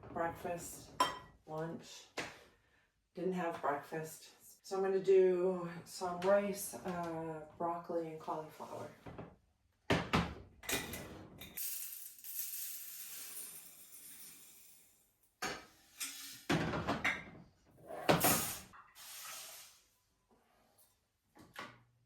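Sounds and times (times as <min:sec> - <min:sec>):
hiss: 0:18.2 - 0:19.9.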